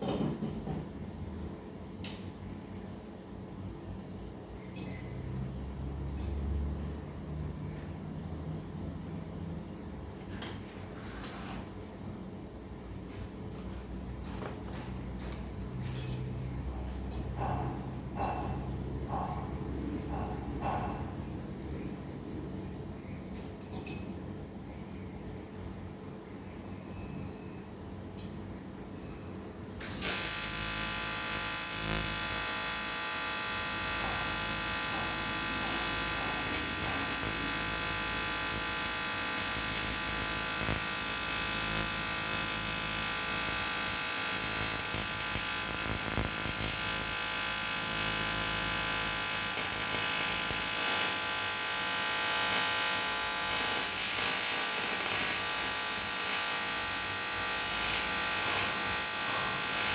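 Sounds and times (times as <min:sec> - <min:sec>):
welding arc buzzing and hissing: 0:29.8 - 0:59.9.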